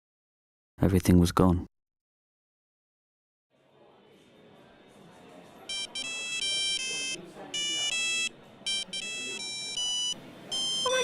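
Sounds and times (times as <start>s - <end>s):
monophonic ringtone beeping notes: 5.7s - 11.0s.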